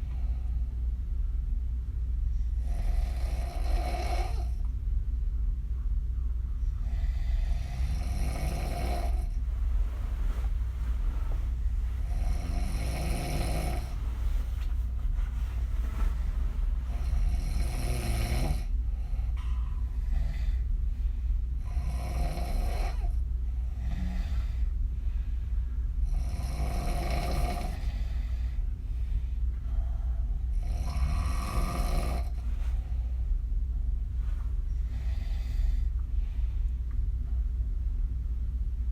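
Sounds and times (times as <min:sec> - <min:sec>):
steady low hum: 0:00.0 - 0:38.9
woman snoring: 0:02.6 - 0:04.6, 0:06.9 - 0:09.4, 0:12.0 - 0:14.5, 0:15.7 - 0:18.7, 0:21.7 - 0:23.1, 0:23.8 - 0:24.6, 0:26.1 - 0:28.2, 0:30.6 - 0:32.4.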